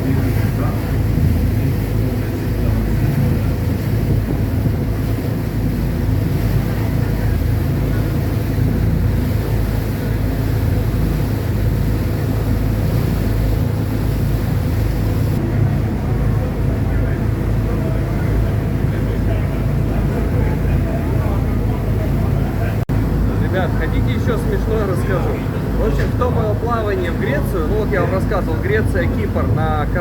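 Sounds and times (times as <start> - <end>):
wind on microphone: 0.0 - 23.8
ferry engines droning: 0.0 - 30.0.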